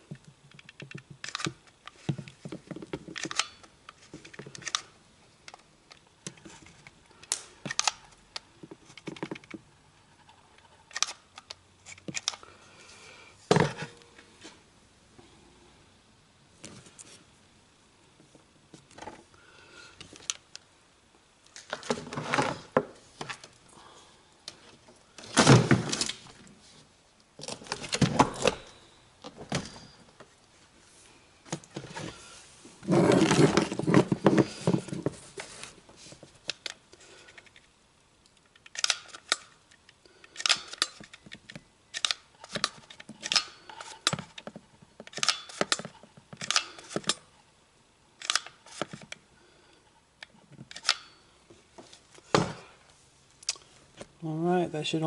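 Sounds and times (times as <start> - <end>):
hands handling plastic parts: 0.0 - 12.5, 27.2 - 30.6, 31.4 - 47.3.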